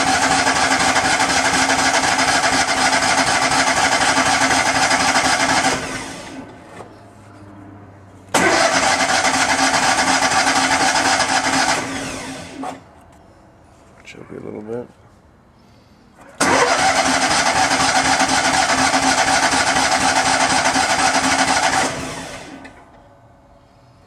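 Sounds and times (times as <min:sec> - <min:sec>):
engine starter cranking: 0:00.0 - 0:06.5, 0:08.3 - 0:12.8, 0:16.4 - 0:22.9.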